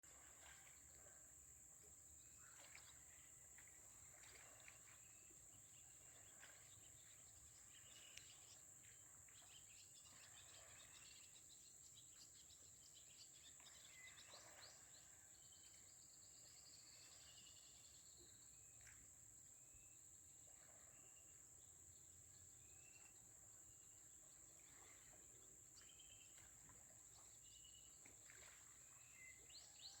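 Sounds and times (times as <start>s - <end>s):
faint bird chirps: 4.1s - 19.0s, 24.6s - 30.0s.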